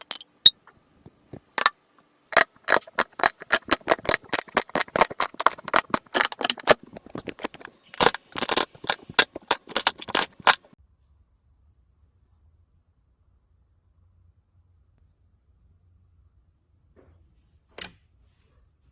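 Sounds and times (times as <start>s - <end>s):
slime clicking and popping: 2.3s - 10.7s.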